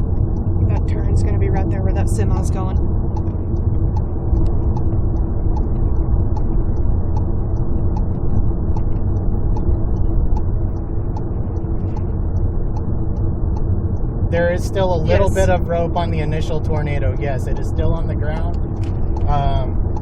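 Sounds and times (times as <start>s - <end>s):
vehicle cabin road rumble: 0.0s - 20.0s
faint light ticks: 2.7s - 14.2s, 17.6s - 20.0s.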